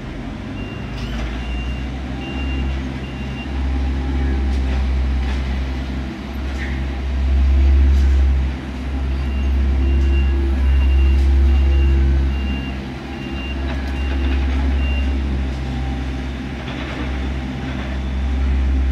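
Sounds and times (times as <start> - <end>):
diesel engine rumble: 0.0 - 18.9
backup alarm beeping: 9.3 - 15.2.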